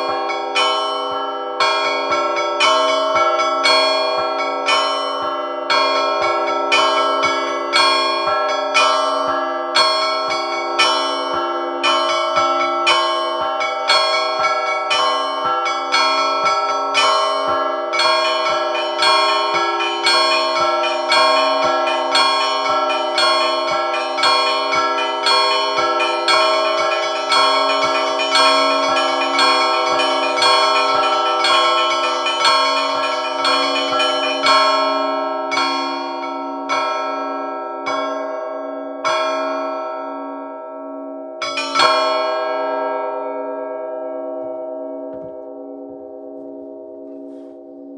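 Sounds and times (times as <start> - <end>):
large bell low hum: 0.0 - 47.9
rapid small bell strikes: 18.0 - 35.0.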